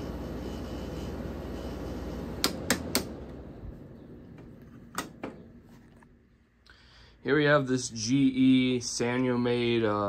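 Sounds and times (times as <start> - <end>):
air conditioner humming: 0.0 - 10.0
control switch clicks: 2.4 - 3.1.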